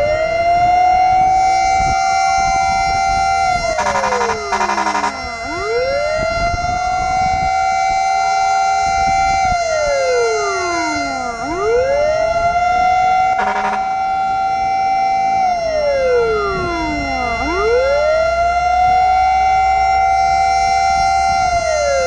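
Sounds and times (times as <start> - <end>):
fire truck siren wailing: 0.0 - 22.0
short horn blast: 3.8 - 5.3, 13.4 - 13.9.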